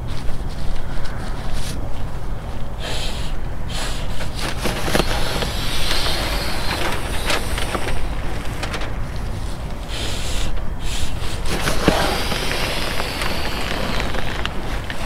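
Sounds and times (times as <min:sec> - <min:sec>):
wind rumbling on microphone: 0:00.0 - 0:15.0
plastic sheet crinkling: 0:04.3 - 0:09.8, 0:11.4 - 0:15.0.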